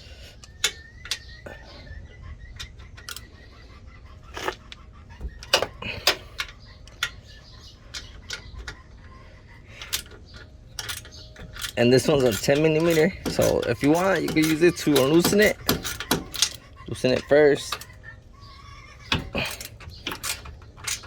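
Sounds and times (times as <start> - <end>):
metallic clicks of hand tools: 10.8 - 16.6.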